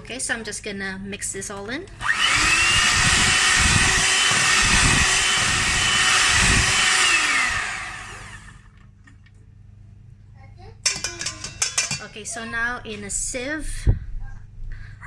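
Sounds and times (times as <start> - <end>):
electric hand mixer whining: 2.0 - 8.7.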